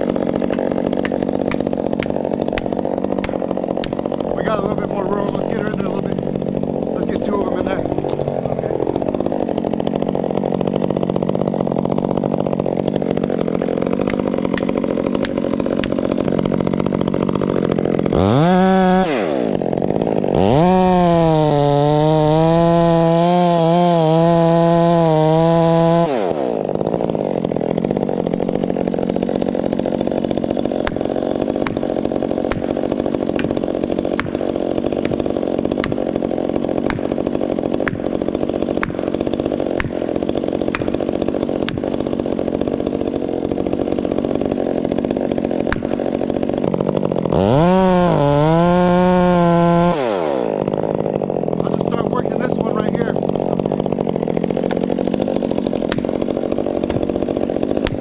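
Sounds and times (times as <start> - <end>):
chainsaw cutting and idling: 0.0 - 58.0.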